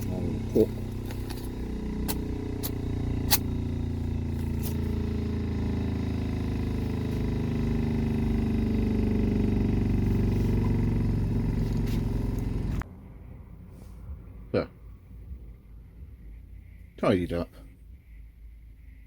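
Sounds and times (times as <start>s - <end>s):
grinding machine motor hum: 0.0s - 12.8s.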